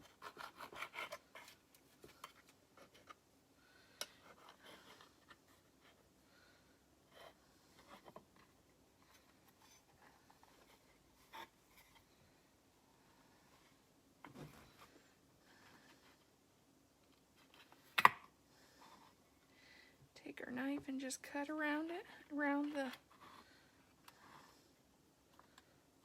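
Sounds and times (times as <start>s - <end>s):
knife scraping dough: 0.0s - 1.6s.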